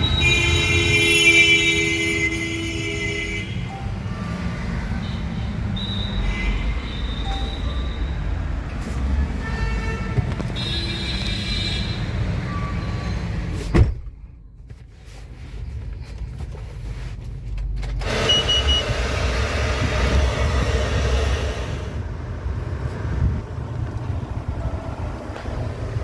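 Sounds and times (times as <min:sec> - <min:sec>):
car engine idling: 0:18.0 - 0:25.0
steady rushing noise: 0:18.2 - 0:26.0.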